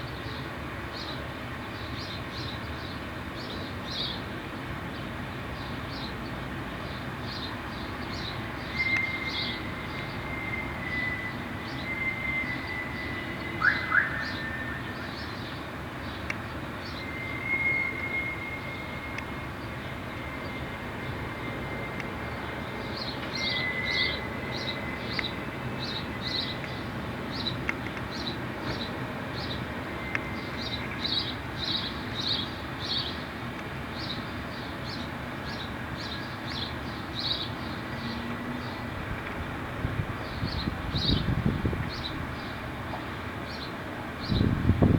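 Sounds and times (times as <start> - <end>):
distant squeal of wagon brakes: 8.6 - 15.6, 16.8 - 33.3.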